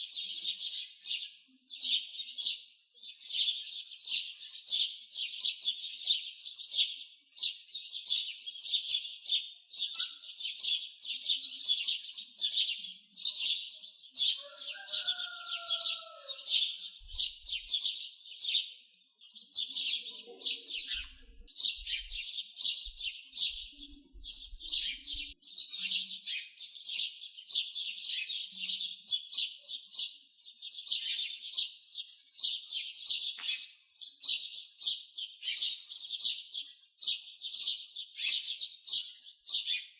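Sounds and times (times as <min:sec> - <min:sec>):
small birds chirping: 0:00.0 - 0:39.9.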